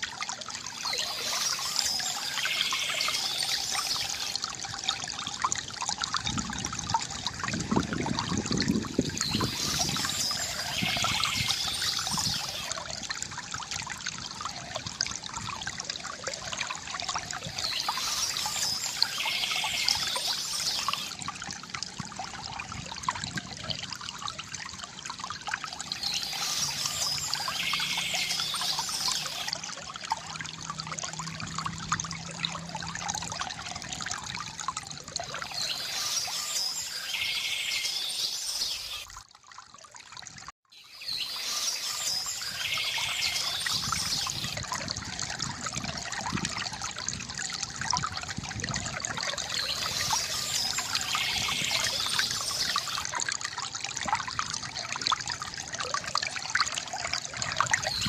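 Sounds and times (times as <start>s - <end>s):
water trickling from fountain: 0.0s - 58.0s
songbird singing: 9.1s - 12.7s, 26.0s - 29.5s, 35.4s - 39.0s, 40.8s - 44.6s, 49.5s - 53.1s.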